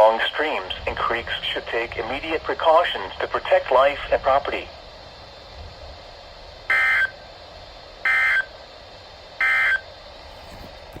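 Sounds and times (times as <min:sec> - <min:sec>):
steady hiss: 0:00.0 - 0:11.0.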